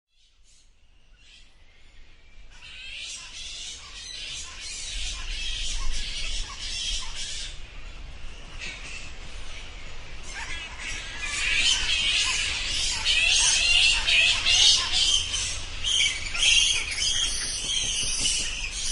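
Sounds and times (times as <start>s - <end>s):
bats squeaking and chattering: 10.2s - 18.9s.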